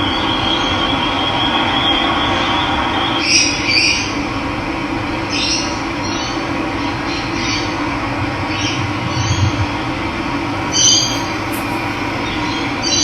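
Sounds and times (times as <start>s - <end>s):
running water: 10.6s - 12.9s
bird short calls: 10.7s - 12.7s.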